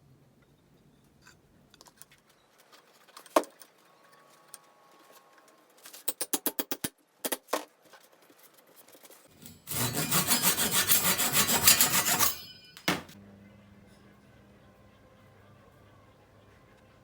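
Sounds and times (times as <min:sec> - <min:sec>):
rubbing strokes on wood: 0:09.4 - 0:12.7
knock: 0:12.8 - 0:13.2.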